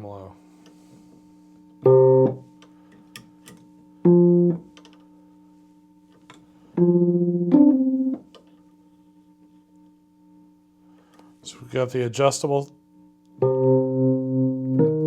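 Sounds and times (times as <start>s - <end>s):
faint steady hum: 0.0s - 15.0s
electric piano chords with tremolo: 1.8s - 2.4s, 4.0s - 4.7s, 6.8s - 8.2s, 13.4s - 15.0s.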